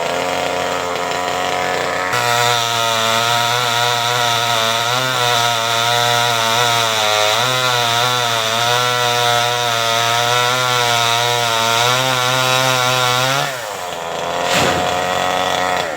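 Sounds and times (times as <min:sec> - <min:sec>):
chainsaw cutting branch: 0:00.1 - 0:15.9.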